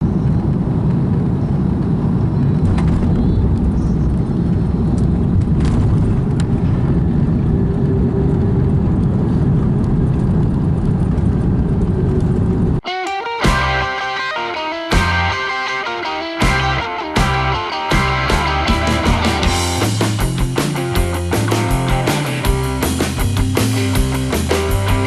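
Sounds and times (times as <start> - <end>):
airliner engine rumble: 0.0 - 12.8.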